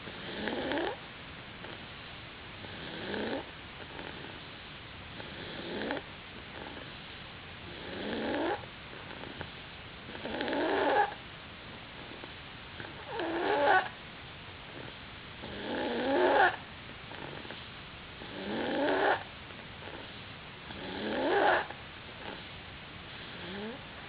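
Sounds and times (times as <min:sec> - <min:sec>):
pet snoring: 0:00.0 - 0:01.0, 0:01.6 - 0:01.9, 0:02.6 - 0:04.4, 0:05.1 - 0:07.0, 0:07.6 - 0:09.5, 0:10.1 - 0:11.2, 0:12.0 - 0:14.0, 0:14.7 - 0:17.6, 0:18.2 - 0:22.5, 0:23.1 - 0:24.0.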